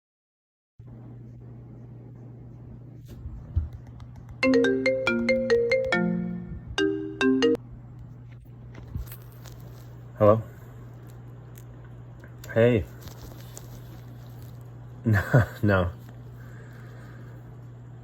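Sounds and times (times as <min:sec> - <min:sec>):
steady low hum: 0:00.8 - 0:18.0
mobile phone ringtone: 0:04.4 - 0:07.6.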